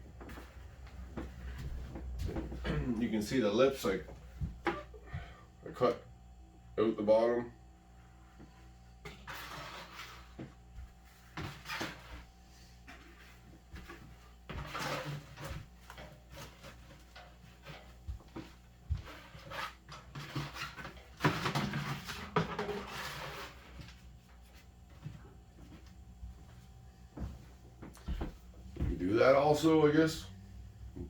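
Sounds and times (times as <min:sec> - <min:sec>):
plastic scraping and rustling: 0:13.0 - 0:24.1.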